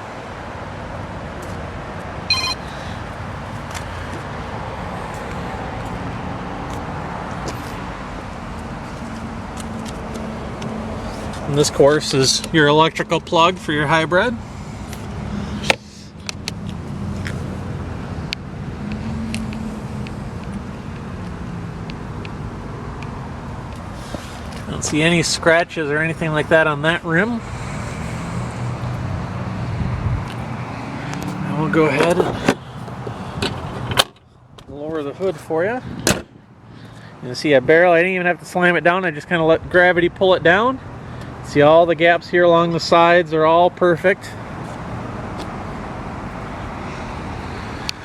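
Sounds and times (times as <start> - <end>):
steady background noise: 0.0 - 40.1, 40.8 - 48.0
short electronic beep: 2.3 - 2.7
low outdoor rumble: 23.4 - 33.8, 44.0 - 48.0.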